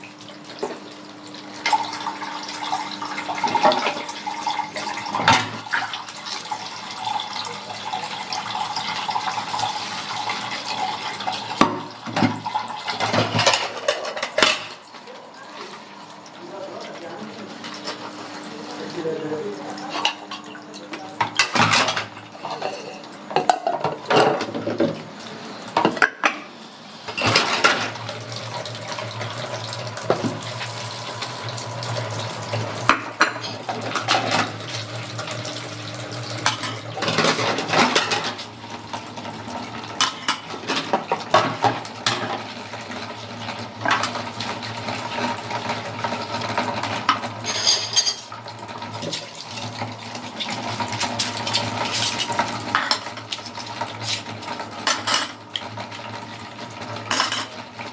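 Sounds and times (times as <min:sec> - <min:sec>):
tap water running: 0:00.0 - 0:57.9
dishes and cutlery clinking: 0:12.1 - 0:14.8, 0:19.8 - 0:25.0, 0:36.4 - 0:38.4, 0:40.0 - 0:42.4, 0:47.0 - 0:48.4, 0:50.4 - 0:55.7, 0:57.1 - 0:57.6.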